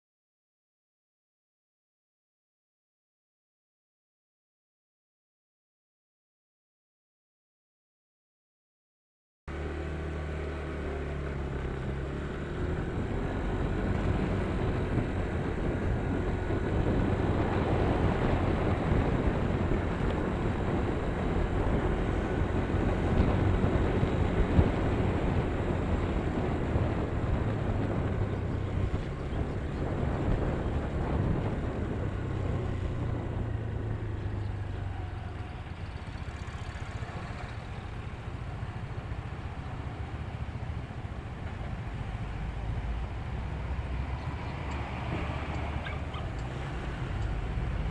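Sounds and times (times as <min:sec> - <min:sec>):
vehicle engine hum: 0:09.5 - 0:47.9
tyre and wind noise: 0:11.0 - 0:47.9.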